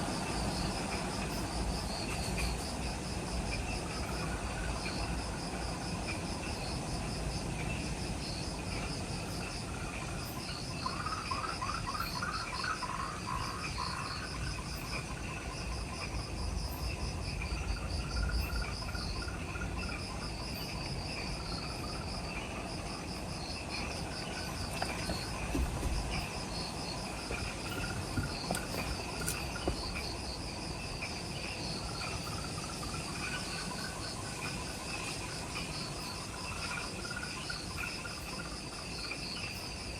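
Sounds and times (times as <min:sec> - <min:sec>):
insect trill: 0:00.0 - 0:39.9
insects chirping rapidly: 0:00.0 - 0:39.9
lower pulsed insect call: 0:00.0 - 0:39.9.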